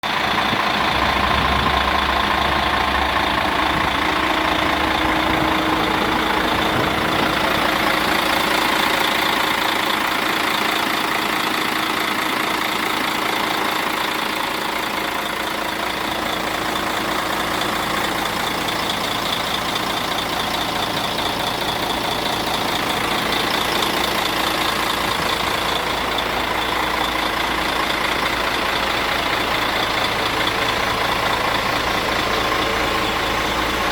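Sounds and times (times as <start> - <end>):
truck diesel engine running: 0.0 - 33.9.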